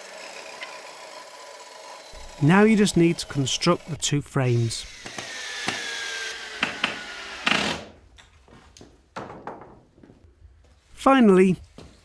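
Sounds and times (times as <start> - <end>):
power drill driving into timber: 0.0 - 3.9, 4.8 - 8.0.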